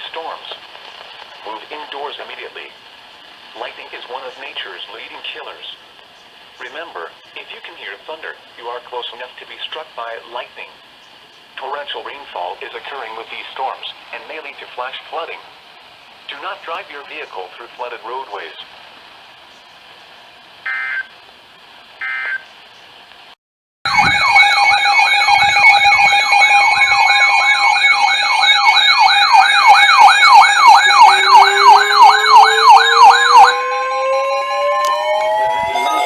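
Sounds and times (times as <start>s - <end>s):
faint hiss: 0.0s - 23.4s
siren tone winding up: 20.7s - 21.1s, 22.0s - 22.4s, 23.9s - 36.0s
siren yelping: 20.7s - 21.1s, 22.0s - 22.5s, 23.9s - 36.0s.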